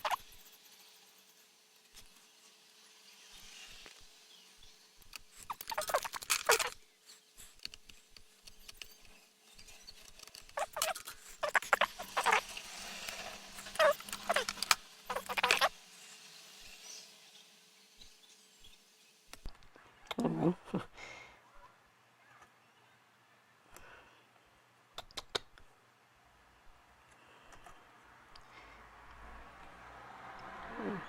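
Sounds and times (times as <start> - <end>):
hand tools scratching circuit board: 0.0 - 2.5, 5.1 - 15.8.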